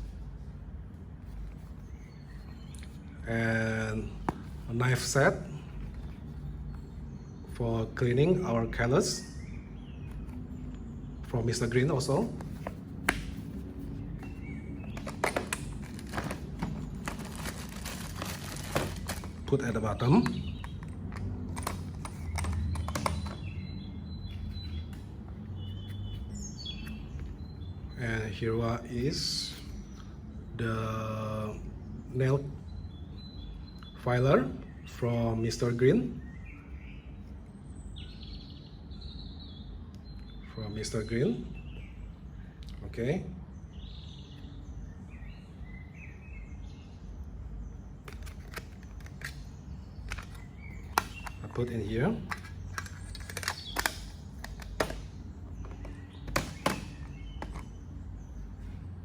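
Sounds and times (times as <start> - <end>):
faint birds chirping: 0.0 - 59.0
low background noise: 0.0 - 59.0
low steady hum: 0.0 - 59.0
metal tools clicking in plastic box: 15.0 - 19.5, 52.3 - 55.0.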